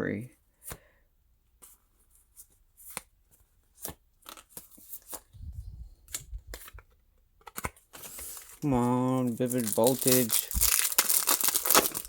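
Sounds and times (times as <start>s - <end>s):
foil wrapper crinkling and tearing: 8.0s - 12.0s.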